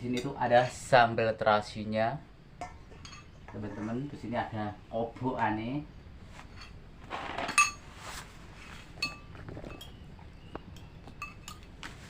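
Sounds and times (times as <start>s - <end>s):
tableware clinking: 2.6s - 4.0s, 6.5s - 7.9s, 8.9s - 10.0s, 10.8s - 11.7s.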